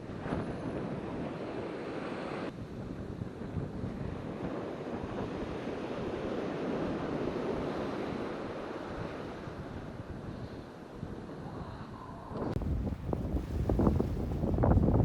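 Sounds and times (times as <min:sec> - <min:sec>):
wind buffeting microphone: 0:00.0 - 0:15.0
sea surf washing in: 0:12.6 - 0:15.0.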